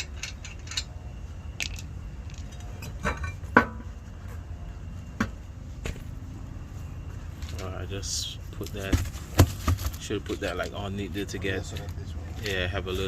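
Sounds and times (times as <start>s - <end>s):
steady low rumble: 0.0s - 9.4s.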